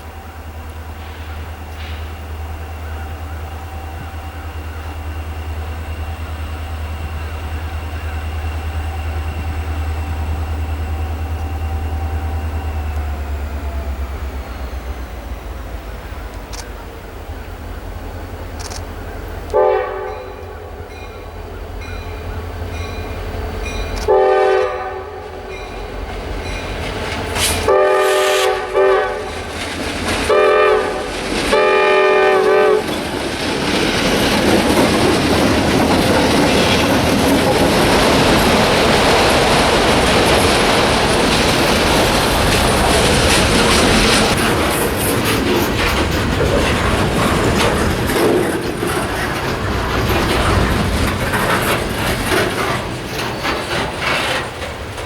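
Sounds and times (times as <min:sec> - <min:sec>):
train wheels rumbling over rails: 0:00.0 - 0:55.0
locomotive horn blasts: 0:19.5 - 0:21.2, 0:24.0 - 0:25.5, 0:27.4 - 0:29.5, 0:30.2 - 0:32.9.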